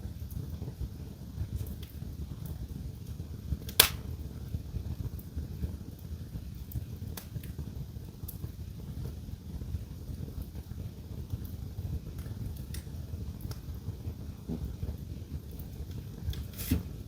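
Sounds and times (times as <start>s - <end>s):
low rumble of fire: 0.0s - 17.0s
wood fire crackling: 0.0s - 17.0s
sharp pops: 3.7s - 4.1s.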